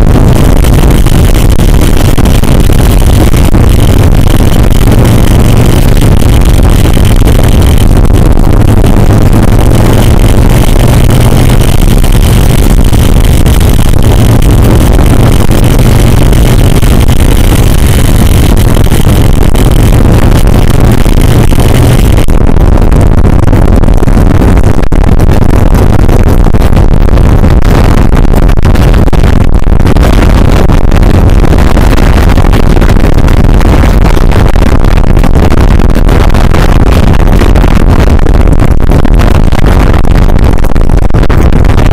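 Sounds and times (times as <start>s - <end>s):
motorcycle engine running: 0.0s - 22.3s
high engine tone: 0.0s - 27.8s.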